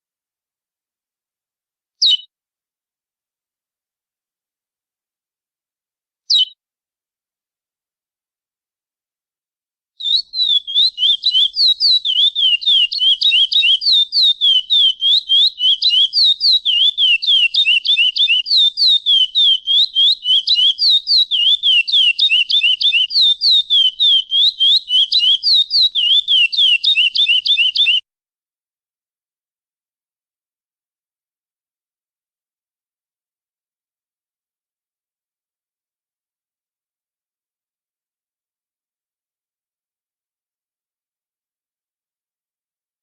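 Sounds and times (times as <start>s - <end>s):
finch singing whistled notes: 2.0s - 2.3s, 10.0s - 28.0s.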